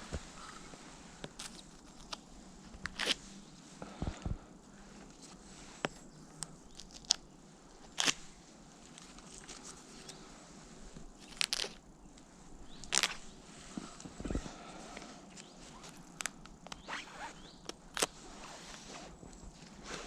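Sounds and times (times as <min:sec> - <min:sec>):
twigs snapping: 0:07.9 - 0:08.3, 0:11.2 - 0:11.8, 0:12.6 - 0:13.3.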